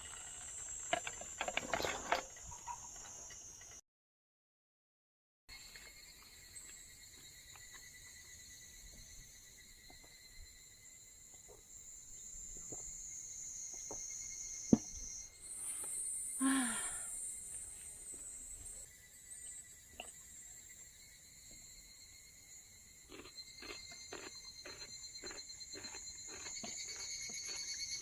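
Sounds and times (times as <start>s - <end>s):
insects singing: 11.7s - 28.0s.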